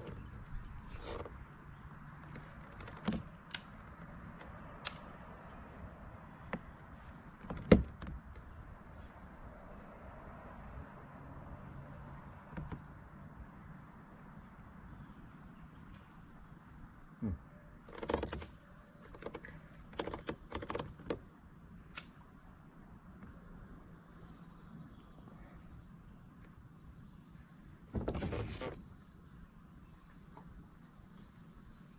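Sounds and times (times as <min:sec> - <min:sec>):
insects chirping: 0:00.0 - 0:31.9.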